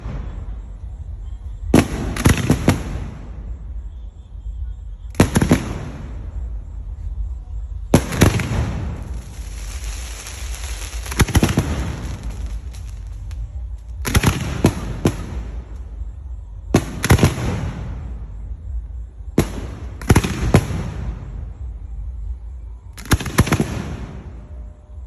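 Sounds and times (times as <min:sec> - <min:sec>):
fireworks bangs and crackles: 0:00.0 - 0:03.9, 0:05.0 - 0:24.7
steady low rumble: 0:00.0 - 0:25.0.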